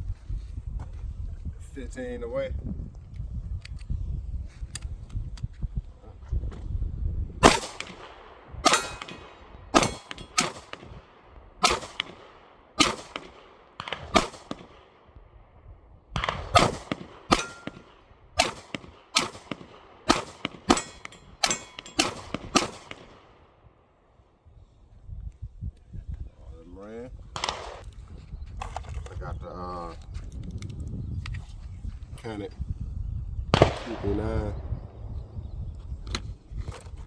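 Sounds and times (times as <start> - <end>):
pistol shots with echo: 7.4 - 15.1, 16.2 - 23.5, 27.4 - 27.8, 33.5 - 34.8.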